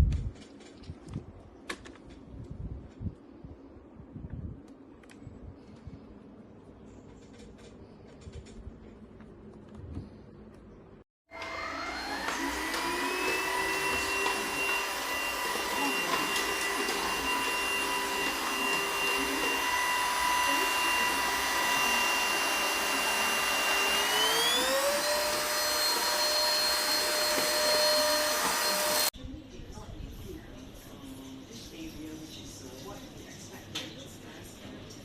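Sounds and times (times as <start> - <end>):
vacuum cleaner motor whine: 11.3 - 29.1.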